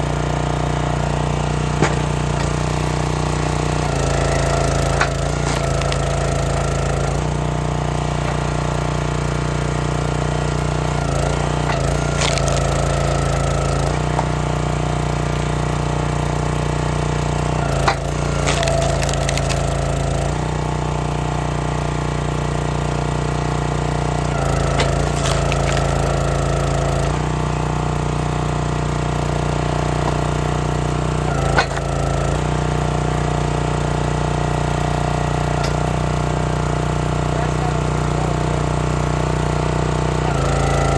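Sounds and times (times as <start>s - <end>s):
log splitter engine running: 0.0s - 40.9s
wood cracking loudly: 0.8s - 15.4s, 17.1s - 20.9s, 23.6s - 27.8s.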